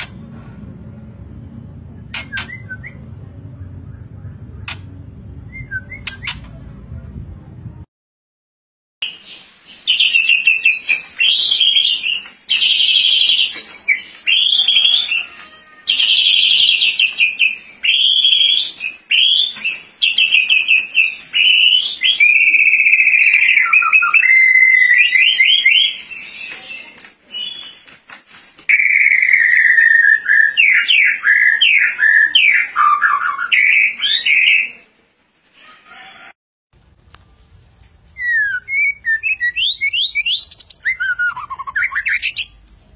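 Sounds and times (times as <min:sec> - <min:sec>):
songbird whistling and trilling: 0:09.0 - 0:15.3, 0:16.0 - 0:27.8, 0:28.7 - 0:34.7, 0:38.1 - 0:42.6.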